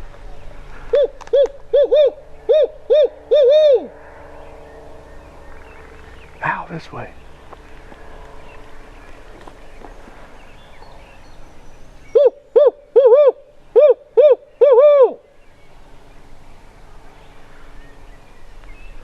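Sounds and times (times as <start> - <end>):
imitated owl hooting: 0.9 - 4.0, 12.1 - 15.2.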